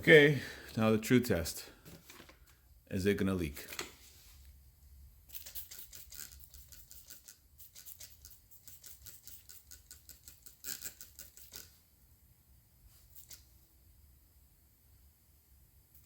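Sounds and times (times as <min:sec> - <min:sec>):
spray bottle spritzing: 0:05.3 - 0:11.7.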